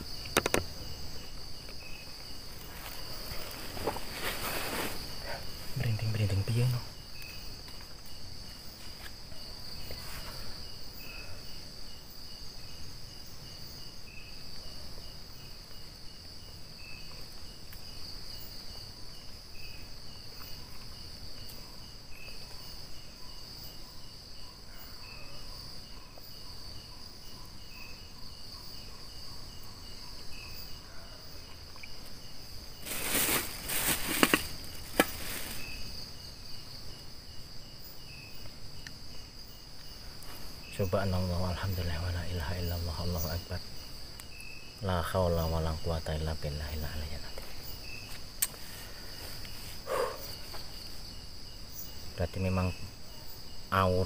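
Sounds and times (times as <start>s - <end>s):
crickets and insects trilling: 0.0s - 54.0s
loud rustling near microphone: 2.6s - 5.8s, 32.8s - 35.8s.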